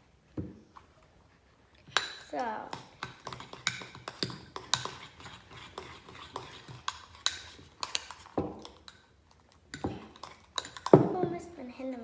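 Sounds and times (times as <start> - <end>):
spoon scraping a bowl: 1.9 - 11.0.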